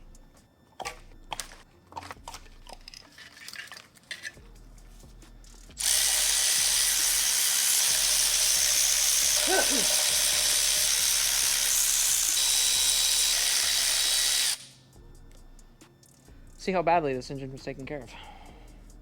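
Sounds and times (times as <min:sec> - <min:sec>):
hand tools clicking and knocking: 0:00.8 - 0:04.5
shop tool rushing whir: 0:05.8 - 0:14.7.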